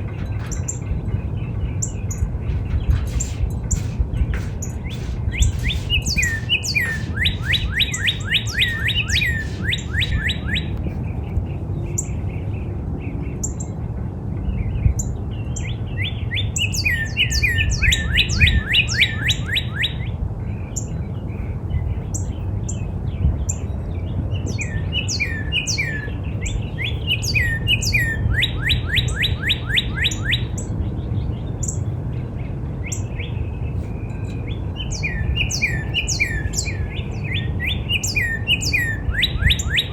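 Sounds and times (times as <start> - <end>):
steady low rumble: 0.0 - 19.3
bird singing whistled song: 1.8 - 10.8, 14.9 - 20.1, 24.3 - 31.9, 32.8 - 39.9.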